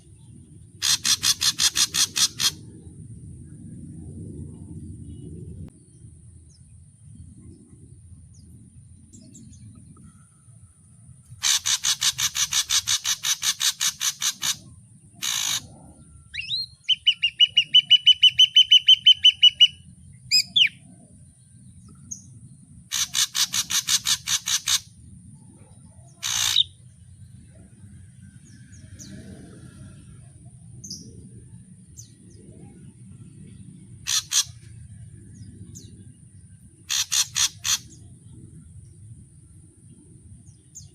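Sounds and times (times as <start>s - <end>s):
bird harsh rattling series: 0.8s - 2.6s, 11.4s - 15.7s, 22.9s - 24.8s, 26.2s - 26.6s, 34.0s - 34.6s, 36.9s - 37.9s
bird short harsh calls: 0.8s - 2.6s, 11.4s - 14.6s, 15.2s - 15.7s, 22.9s - 24.8s, 26.2s - 26.7s, 34.0s - 34.6s, 36.9s - 38.0s
bird whistled notes: 16.4s - 20.8s.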